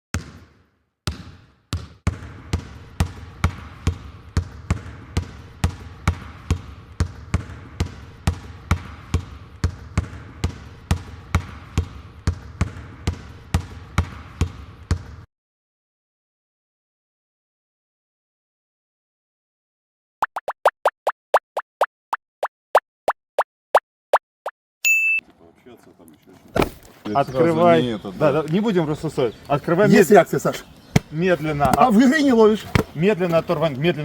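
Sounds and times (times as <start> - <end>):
basketball bouncing on hard floor: 0.1 - 15.2.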